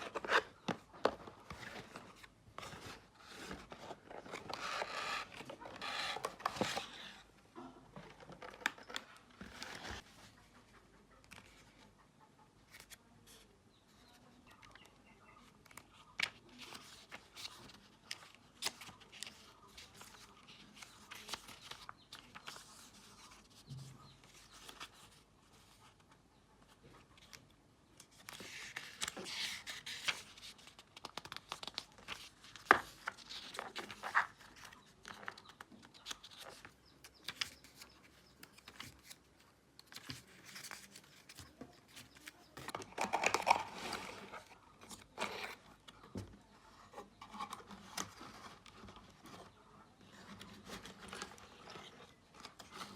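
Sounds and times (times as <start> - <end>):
plastic and cardboard crinkling: 28.1 - 46.2.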